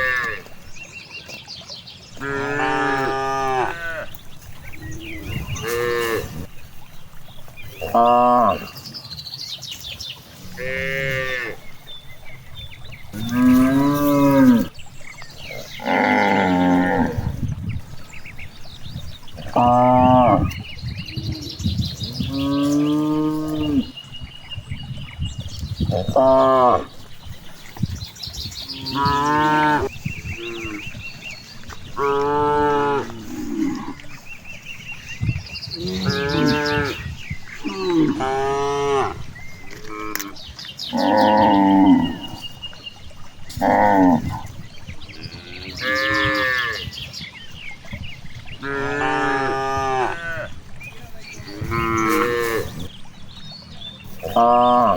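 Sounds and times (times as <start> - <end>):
cattle mooing: 0.0 - 0.5, 2.2 - 4.2, 5.1 - 6.5, 10.4 - 11.7, 13.1 - 14.7, 15.5 - 17.3, 22.3 - 23.9, 28.7 - 30.8, 31.9 - 34.1, 35.8 - 42.3, 48.6 - 50.5, 51.4 - 52.9.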